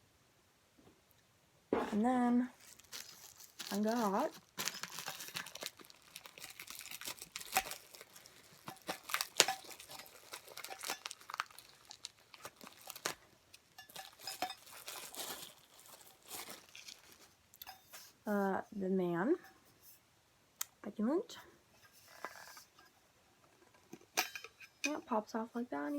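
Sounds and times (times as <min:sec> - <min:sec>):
plastic packaging crinkling: 0:02.5 - 0:17.9.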